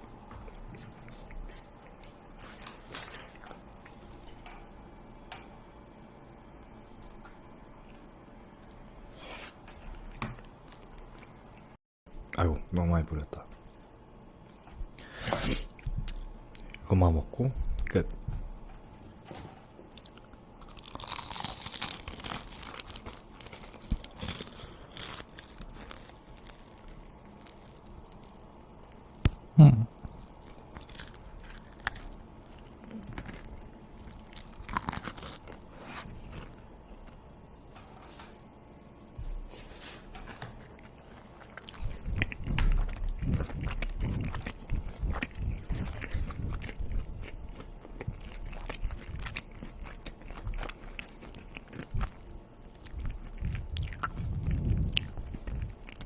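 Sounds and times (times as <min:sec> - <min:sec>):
crunchy chewing: 0:19.9 - 0:37.3, 0:39.9 - 0:56.0.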